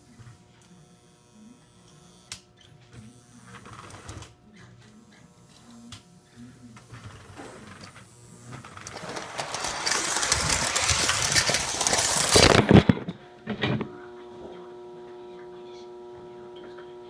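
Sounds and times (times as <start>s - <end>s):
electrical hum: 0.0s - 17.0s
toy electric train running: 3.1s - 12.9s
toy train clattering: 7.0s - 12.9s.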